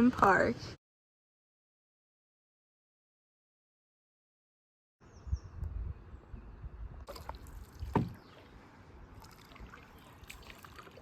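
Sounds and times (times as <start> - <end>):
paddle splashes and drips: 7.0 - 11.0.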